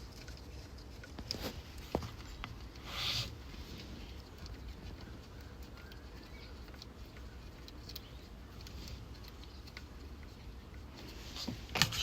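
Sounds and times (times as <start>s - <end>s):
faint bird chirps: 4.9s - 7.4s.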